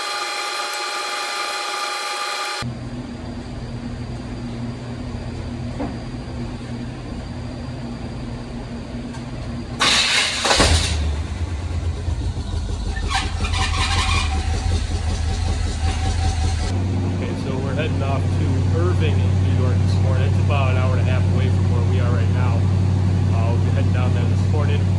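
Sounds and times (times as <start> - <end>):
truck engine idling: 9.2 - 24.9
short loud air hiss: 9.8 - 12.0.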